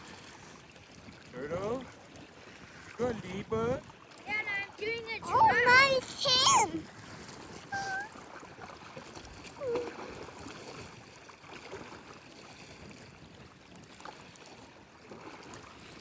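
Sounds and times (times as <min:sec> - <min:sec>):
water lapping on shore: 0:00.0 - 0:16.0
person vocal sounds: 0:05.2 - 0:06.7, 0:07.8 - 0:08.1.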